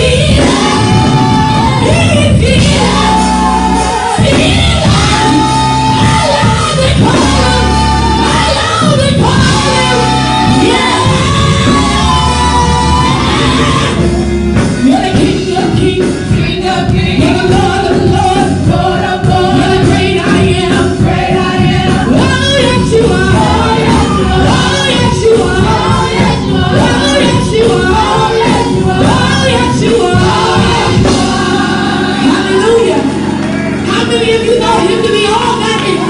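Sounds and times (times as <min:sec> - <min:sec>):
live gospel singing with instruments: 0:00.0 - 0:36.0.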